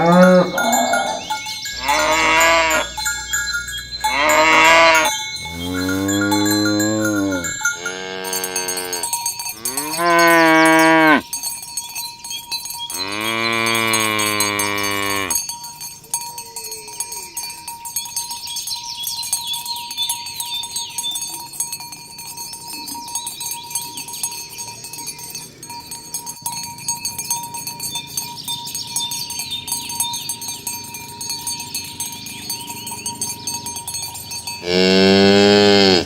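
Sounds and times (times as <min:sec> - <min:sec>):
high chirping sweeps: 0:00.0 - 0:07.8
cow mooing: 0:00.0 - 0:11.2, 0:13.0 - 0:15.4, 0:34.6 - 0:36.0.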